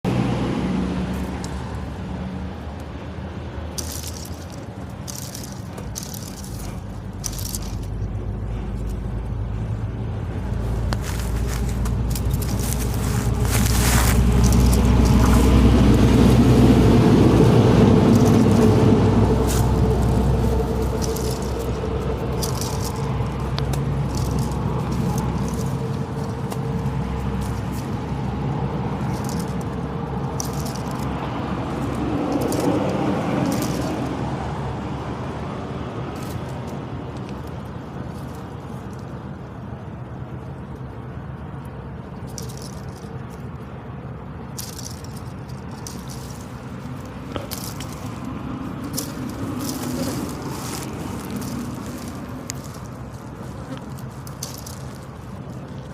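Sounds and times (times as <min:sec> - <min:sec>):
low rumble: 0:00.0 - 0:37.9.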